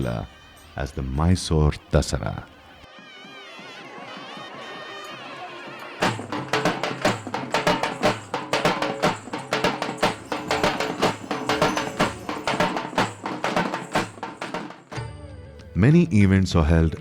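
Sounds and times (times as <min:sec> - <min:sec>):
fast percussion: 0:06.0 - 0:15.1.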